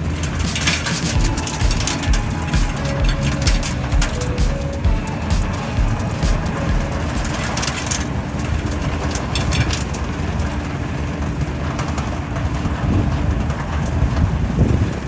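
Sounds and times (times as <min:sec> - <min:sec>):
tractor engine rumbling: 0:00.0 - 0:15.0.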